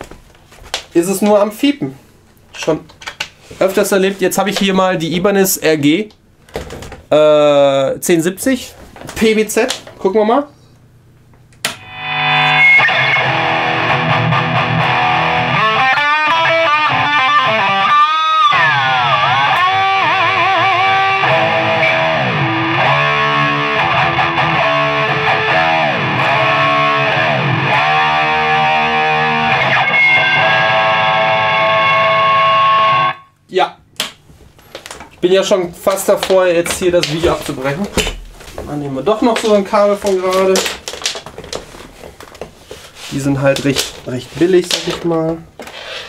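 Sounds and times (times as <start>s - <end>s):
distorted electric guitar with wah: 11.8s - 33.3s.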